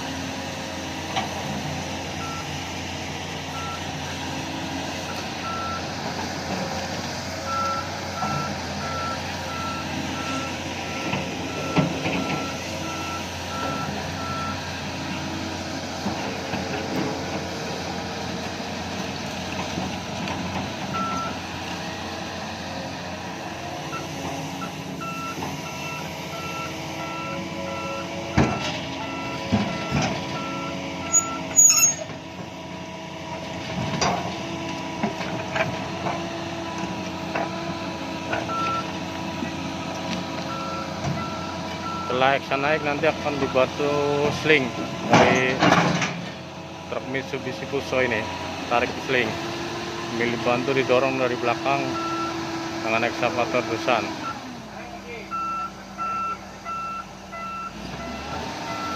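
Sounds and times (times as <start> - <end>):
heavy machinery engines running: 0.0 - 58.9
backup alarm beeping: 55.3 - 58.2.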